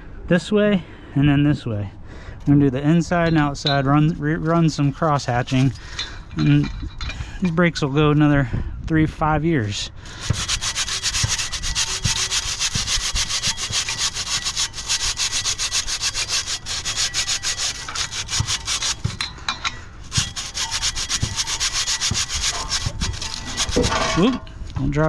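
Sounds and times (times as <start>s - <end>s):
sandpaper rubbing on metal: 10.1s - 19.2s, 20.0s - 24.3s.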